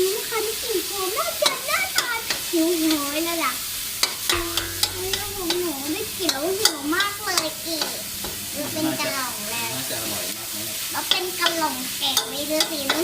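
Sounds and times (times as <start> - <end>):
food sizzling in a wok: 0.0 - 13.0
wavering pitched tone: 4.3 - 10.3.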